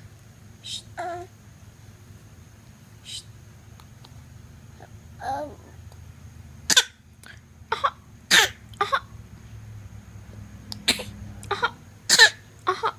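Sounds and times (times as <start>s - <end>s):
short sharp coughs: 7.8s - 9.0s, 10.8s - 12.4s.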